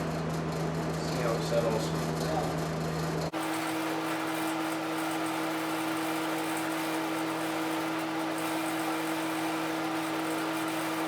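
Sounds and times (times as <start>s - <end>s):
steady low machine hum: 0.0s - 4.0s.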